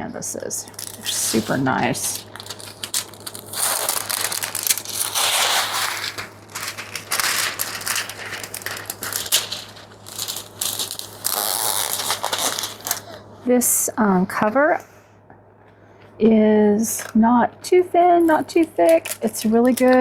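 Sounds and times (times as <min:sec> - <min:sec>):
plastic cover crinkling: 0:00.3 - 0:13.2, 0:18.2 - 0:20.0.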